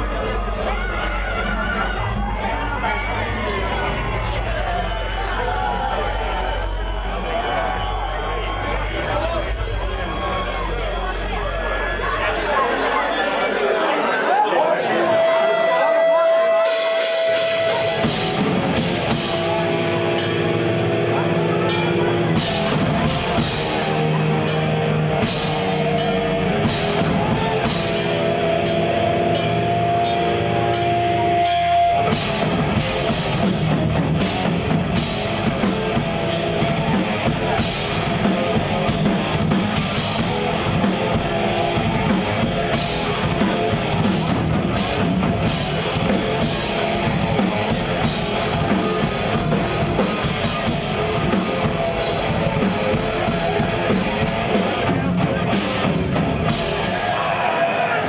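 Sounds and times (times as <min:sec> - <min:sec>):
death metal band playing: 0:14.9 - 0:58.0.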